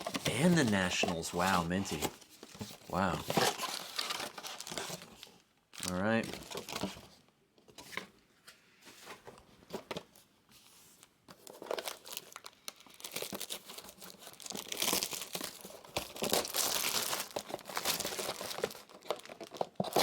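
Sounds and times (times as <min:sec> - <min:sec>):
card packaging crinkling: 0:00.0 - 0:07.0, 0:11.3 - 0:20.0.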